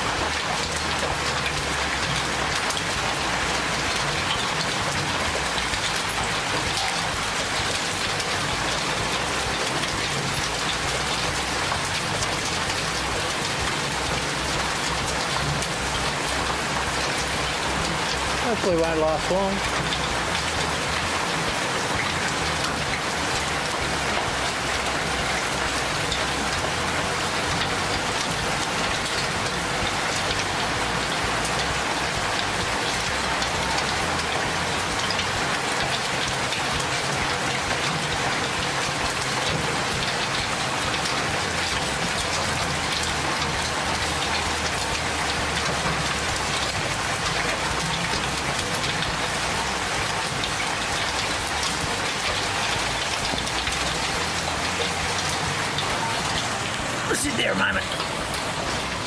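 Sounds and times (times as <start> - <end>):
hail and rain falling: 0.0 - 59.0.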